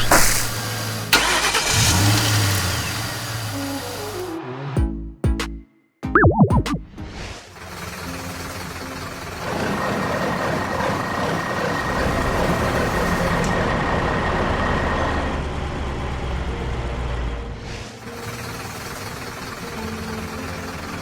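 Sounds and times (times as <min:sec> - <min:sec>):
heavy truck engine running: 0:00.0 - 0:04.3, 0:07.0 - 0:21.0.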